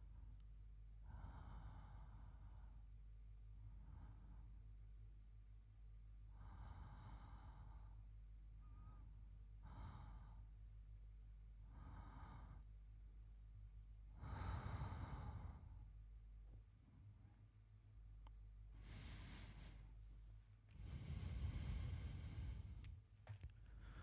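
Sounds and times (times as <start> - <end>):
man breathing slowly: 1.0 - 2.9, 3.6 - 4.7, 6.3 - 10.5, 11.6 - 12.7, 14.2 - 15.9, 18.7 - 20.1, 20.7 - 24.0.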